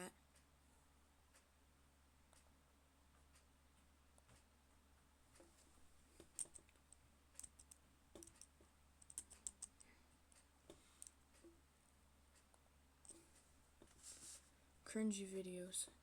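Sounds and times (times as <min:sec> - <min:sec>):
keyboard typing clicks: 0:07.4 - 0:09.9.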